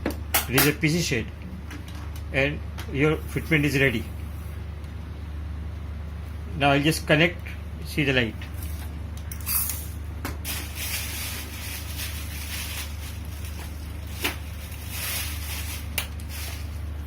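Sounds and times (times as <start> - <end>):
low machinery hum: 0.0 - 17.0
hissy handling noise: 10.4 - 17.0.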